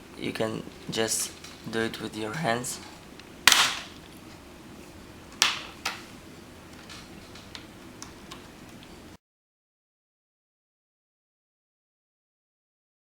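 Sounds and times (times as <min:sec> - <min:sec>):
plastic clips snapping: 0:03.2 - 0:04.2, 0:05.3 - 0:06.1.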